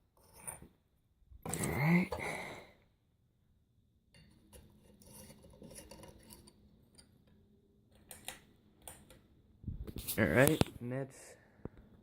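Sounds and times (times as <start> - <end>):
glass bulb clinking and scraping: 4.2 - 7.1.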